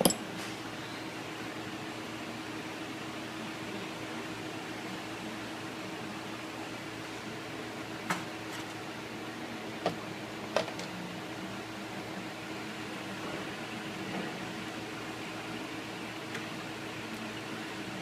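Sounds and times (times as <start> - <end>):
fan-like hum: 0.0 - 18.0.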